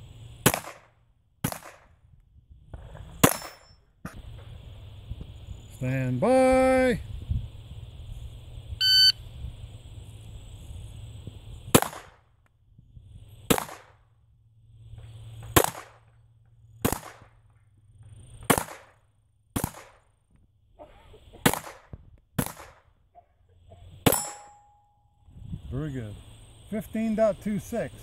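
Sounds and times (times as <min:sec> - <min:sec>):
pistol gunshots: 0:00.4 - 0:02.0, 0:03.2 - 0:03.7, 0:11.7 - 0:12.2, 0:13.5 - 0:14.0, 0:15.5 - 0:16.1, 0:16.8 - 0:17.4, 0:18.4 - 0:20.1, 0:21.4 - 0:22.9
shot timer beep: 0:08.8 - 0:09.2.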